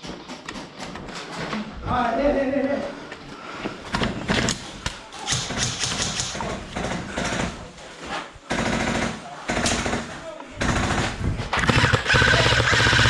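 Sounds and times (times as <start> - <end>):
sharp clicks taps and thumps: 3.9 - 7.5.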